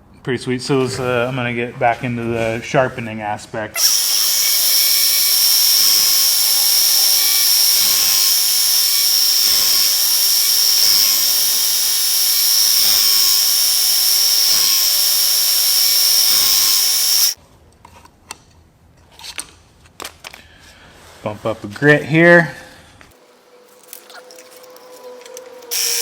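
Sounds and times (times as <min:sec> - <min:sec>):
belt sharpener whine and hiss: 0:03.8 - 0:17.4, 0:25.6 - 0:26.0.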